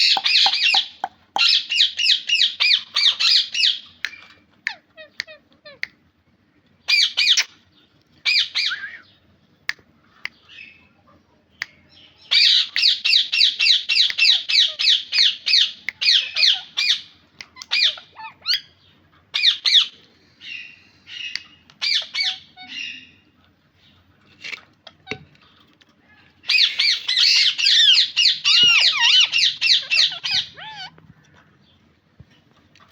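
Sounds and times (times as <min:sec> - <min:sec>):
parrot calling harshly: 0:00.0 - 0:03.8, 0:12.3 - 0:18.7, 0:21.8 - 0:23.0, 0:26.5 - 0:31.0.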